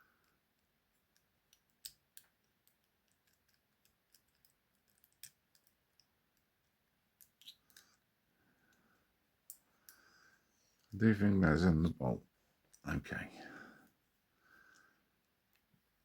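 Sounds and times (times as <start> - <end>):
wire picks clicking in padlock: 0.2 - 6.1.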